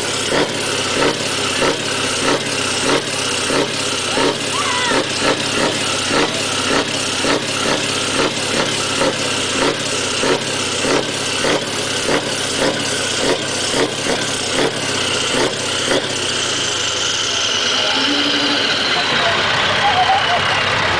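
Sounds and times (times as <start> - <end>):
diesel truck engine idling: 0.0 - 20.9.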